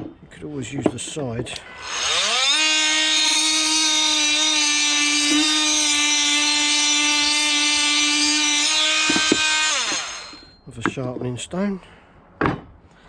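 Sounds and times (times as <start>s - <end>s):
oscillating multi-tool whining: 1.7s - 10.6s
blade grinding against metal disc: 8.3s - 10.5s.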